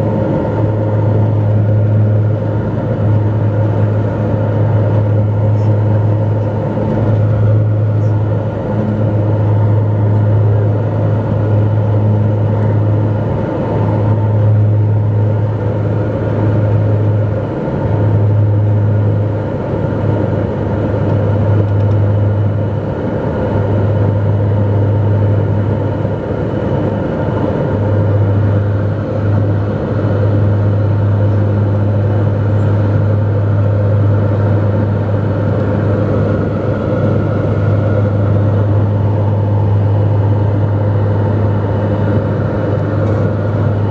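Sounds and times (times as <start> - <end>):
airplane cabin propeller drone: 0.0 - 43.9.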